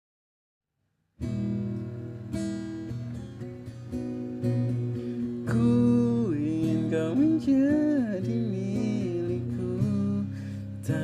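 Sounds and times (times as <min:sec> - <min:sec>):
acoustic guitar strumming chords: 0:01.2 - 0:11.0
person singing: 0:05.4 - 0:11.0.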